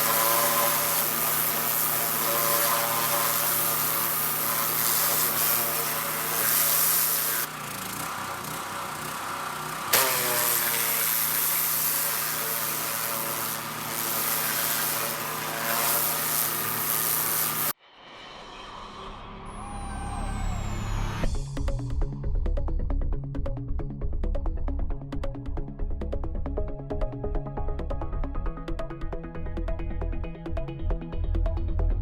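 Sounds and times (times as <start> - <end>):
motor drone: 0.0 - 17.8, 19.1 - 22.9
pressure washer spraying water: 0.0 - 17.8.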